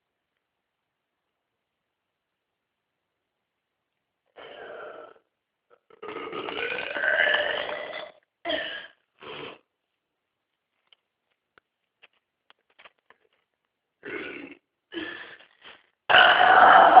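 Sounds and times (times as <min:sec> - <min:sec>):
man burping: 0:04.4 - 0:09.6, 0:14.0 - 0:14.7, 0:16.1 - 0:17.0.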